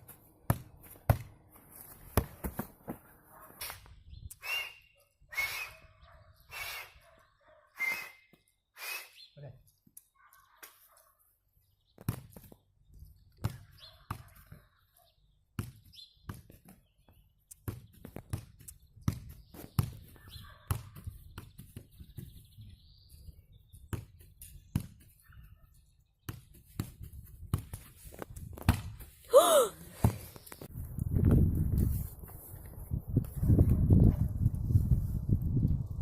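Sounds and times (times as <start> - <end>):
ball kicked and bouncing: 0.0 - 3.0, 12.0 - 12.6, 13.3 - 14.6, 15.6 - 22.4, 23.8 - 25.2, 26.2 - 29.1.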